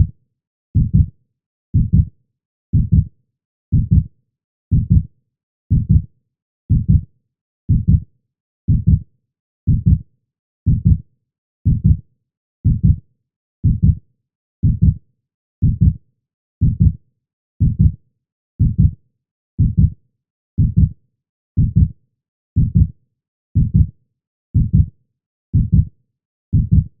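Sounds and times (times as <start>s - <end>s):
heartbeat lub-dub: 1.8s - 2.1s, 2.8s - 3.1s, 3.7s - 4.1s, 6.7s - 7.0s, 7.7s - 8.0s, 11.7s - 12.0s, 17.6s - 18.0s, 20.6s - 20.9s, 21.6s - 21.9s, 23.6s - 23.9s, 25.6s - 25.9s.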